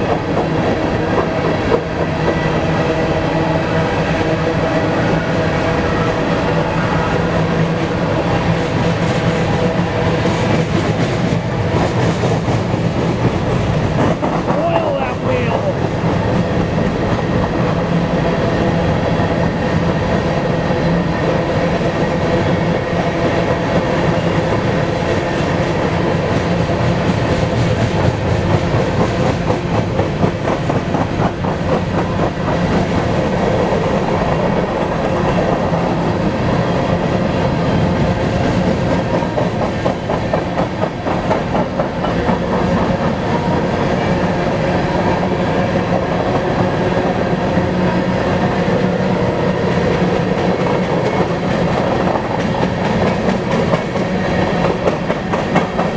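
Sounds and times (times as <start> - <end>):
freight train rolling past: 0.0 - 55.9
train wheel clicks: 10.2 - 17.2, 23.2 - 35.9, 38.4 - 43.6, 49.9 - 55.9.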